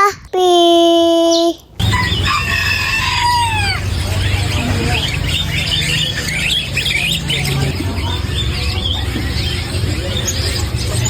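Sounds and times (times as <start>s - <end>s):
songbirds chirping: 0.0s - 11.0s
rooster crowing: 1.8s - 4.8s.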